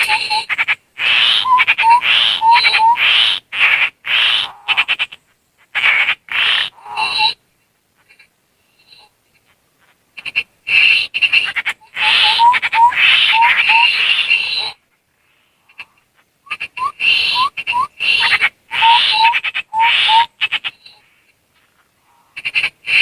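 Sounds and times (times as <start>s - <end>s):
bird rasping chatter: 0.0s - 7.4s, 8.0s - 14.8s, 15.6s - 21.2s, 22.1s - 23.0s
rising whistled bird notes: 16.4s - 18.0s.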